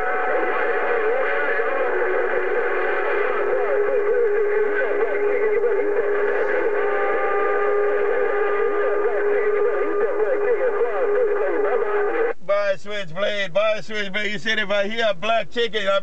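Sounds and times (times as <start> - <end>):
steady low whistle: 0.0 - 12.4
radio static: 0.0 - 15.1
garbled radio signals: 0.0 - 16.0.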